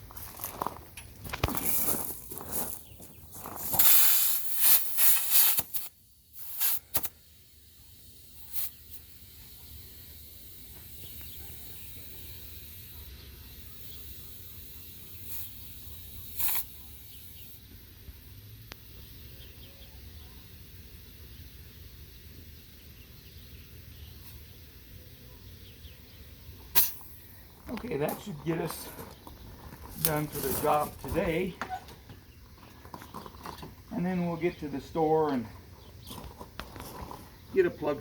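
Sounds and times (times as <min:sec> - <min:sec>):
compressed air hissing from hose: 0:03.6 - 0:09.2, 0:10.0 - 0:17.6, 0:26.6 - 0:27.4.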